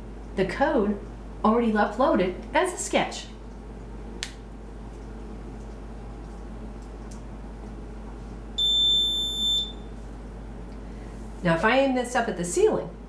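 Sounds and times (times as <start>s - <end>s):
high-pitched buzzer beep: 8.6s - 9.8s.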